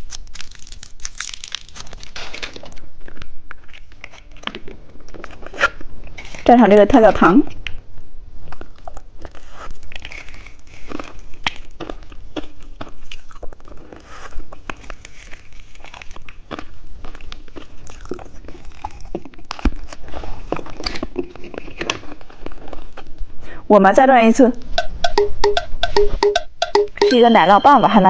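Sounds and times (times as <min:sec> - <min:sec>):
popping candy crackling: 0:00.0 - 0:04.2.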